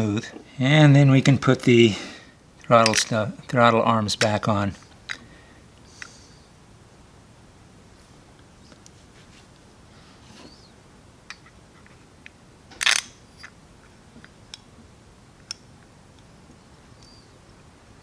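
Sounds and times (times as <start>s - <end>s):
small metal parts clicking and clattering: 2.8s - 3.2s, 12.7s - 13.6s.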